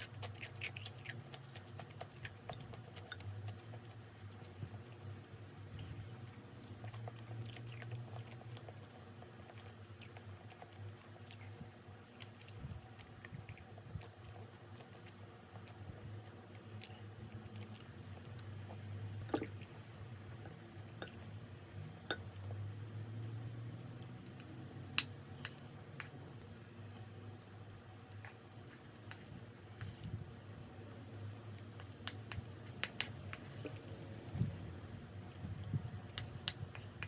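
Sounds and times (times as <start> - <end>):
person chewing: 0.0 - 4.8
steady low hum: 0.0 - 37.0.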